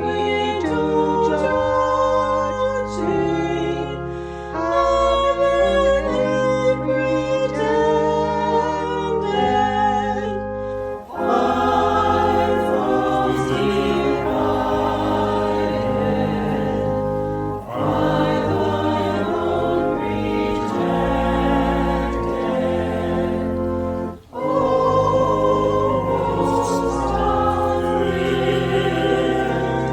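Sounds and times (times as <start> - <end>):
instrumental accompaniment: 10.6 - 29.9
choir singing: 10.8 - 29.9.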